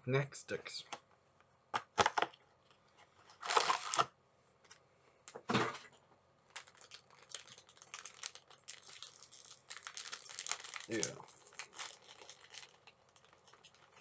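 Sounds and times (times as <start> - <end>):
wrapper crinkling: 2.1 - 4.1, 6.5 - 14.0
snack packet tearing: 3.4 - 4.1, 6.5 - 14.0.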